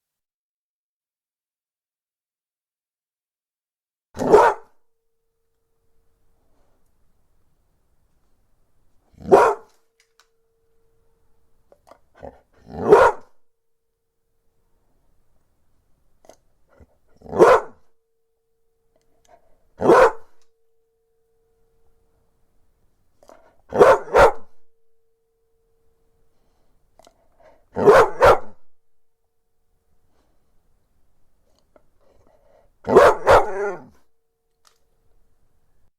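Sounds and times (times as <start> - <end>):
dog barking: 4.2 - 4.8, 9.2 - 9.8, 12.2 - 13.4, 17.2 - 17.9, 19.8 - 20.4, 23.7 - 24.6, 27.7 - 28.7, 32.8 - 34.0.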